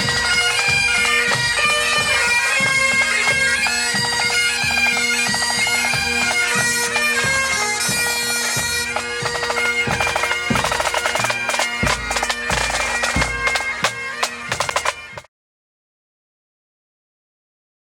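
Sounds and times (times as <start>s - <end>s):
bagpipes playing a tune: 0.0s - 15.3s
drums beating: 0.0s - 15.3s
heavy bass drum strikes: 11.8s - 13.6s.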